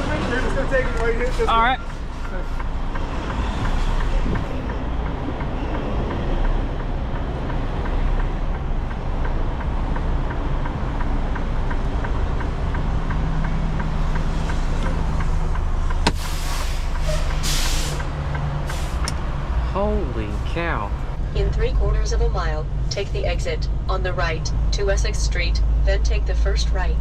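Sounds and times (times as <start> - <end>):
diesel truck engine rumbling: 0.0 - 27.0
air brake hiss: 16.1 - 18.0.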